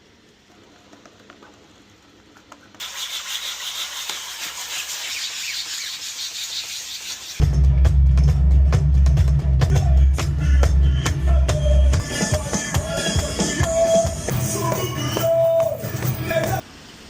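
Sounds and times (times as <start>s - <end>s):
surface being sanded: 2.8s - 7.4s.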